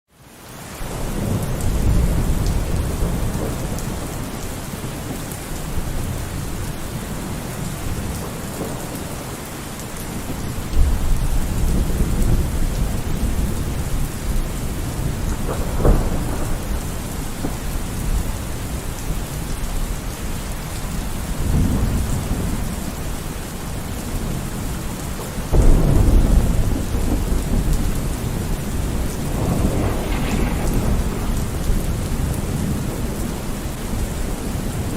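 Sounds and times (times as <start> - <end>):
heavy rain: 0.1 - 34.9
thunder rumbling: 0.8 - 34.9
sharp thunderclaps: 1.0 - 9.3, 10.2 - 18.9, 25.4 - 34.9.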